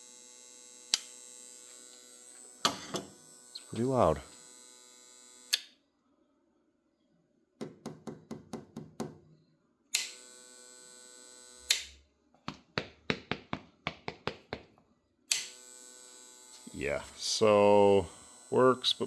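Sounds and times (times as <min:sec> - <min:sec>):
inverter electrical buzz: 0:00.0 - 0:05.7, 0:09.9 - 0:12.0, 0:15.3 - 0:19.0.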